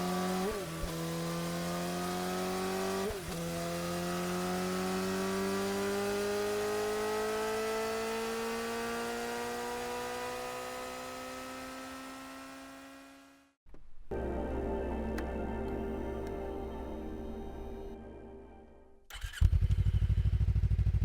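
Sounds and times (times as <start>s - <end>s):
motorcycle engine accelerating: 0.0s - 13.6s, 19.1s - 21.0s.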